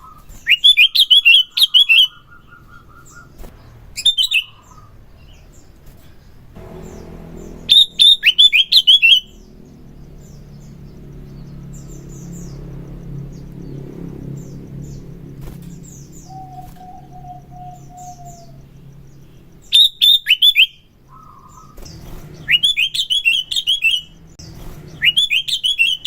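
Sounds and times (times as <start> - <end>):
low background hum: 0.0 - 25.7
bulbul chirping song: 0.0 - 26.0.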